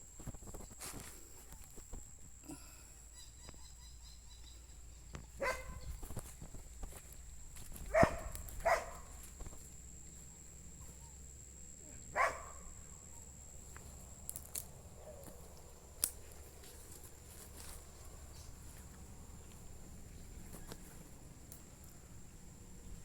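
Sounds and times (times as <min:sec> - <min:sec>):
dog barking: 0:05.4 - 0:05.9, 0:07.9 - 0:09.2, 0:12.1 - 0:12.7.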